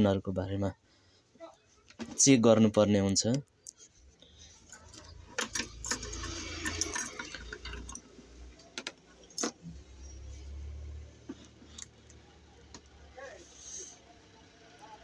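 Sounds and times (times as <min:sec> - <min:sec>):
small objects rattling: 0:04.7 - 0:08.0.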